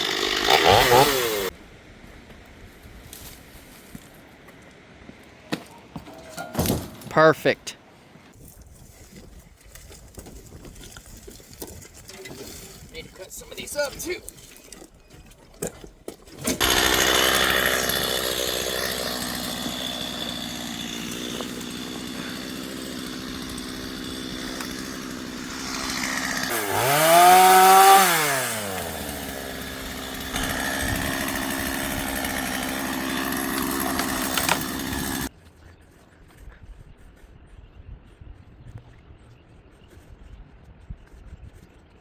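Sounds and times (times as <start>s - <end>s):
chainsaw revving: 0.0s - 1.5s, 16.4s - 35.3s.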